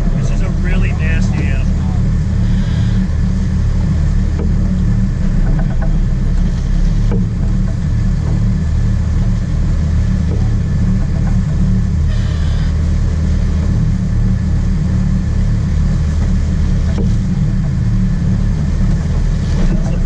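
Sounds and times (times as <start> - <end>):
boat engine droning: 0.0 - 20.0.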